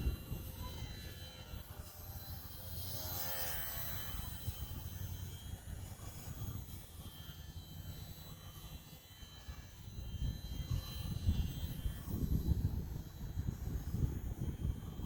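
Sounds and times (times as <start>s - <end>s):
wind buffeting microphone: 0.0s - 2.5s, 10.0s - 15.0s
model airplane motor whine: 0.0s - 15.0s.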